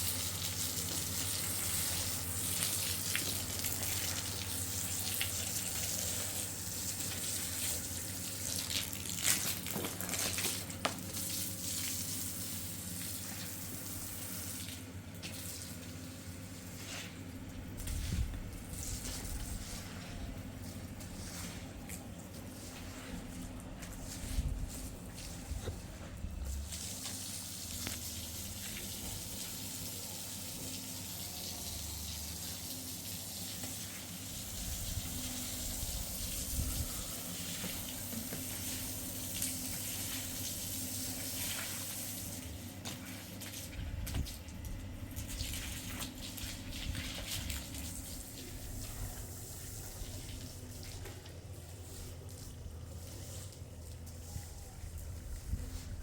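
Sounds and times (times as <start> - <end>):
water running and splashing: 26.5 - 42.5, 43.2 - 51.2.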